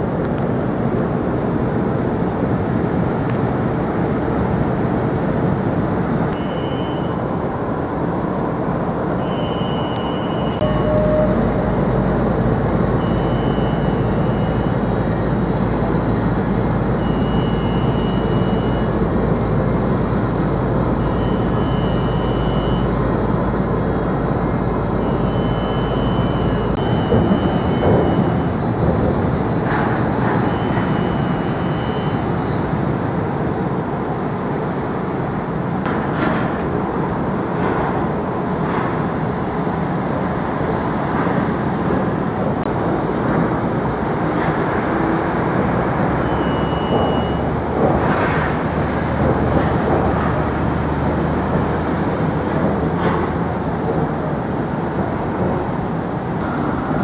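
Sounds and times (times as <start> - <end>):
vehicle rumble: 0.0 - 57.0
short high-pitched beeps: 6.3 - 7.2, 9.2 - 11.6, 12.9 - 19.6, 20.4 - 28.6, 30.4 - 32.6, 46.2 - 47.5.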